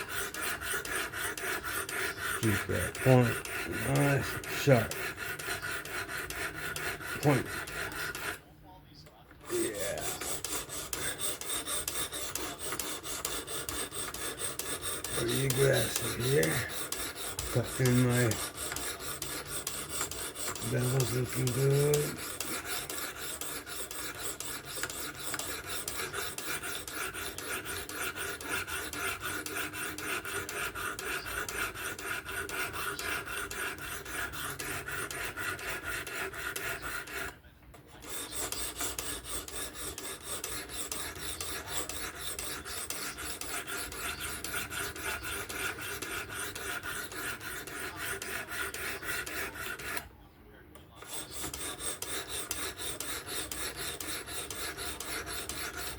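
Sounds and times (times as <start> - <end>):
knife scraping on sharpening stone: 0.0 - 8.4, 9.5 - 37.3.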